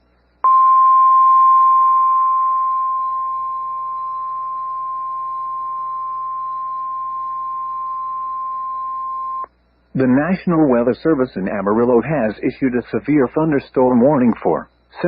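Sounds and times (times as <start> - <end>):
steady electronic alarm tone: 0.4 - 9.5.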